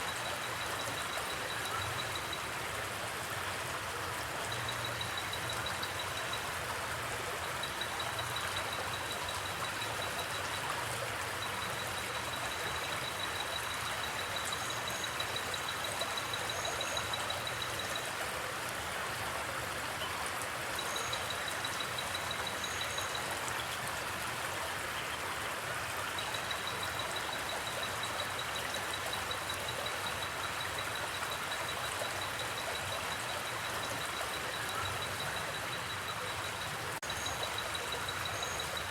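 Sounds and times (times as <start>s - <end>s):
river water flowing: 0.0s - 38.9s
crickets trilling: 7.4s - 18.1s, 26.2s - 38.9s.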